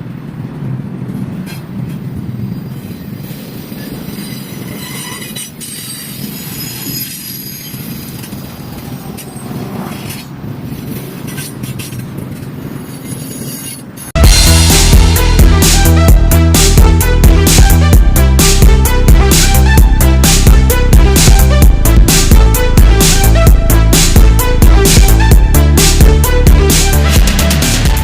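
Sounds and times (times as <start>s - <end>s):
rumble of train wheels: 0.0s - 28.0s
wheels squealing on rails: 1.0s - 14.2s.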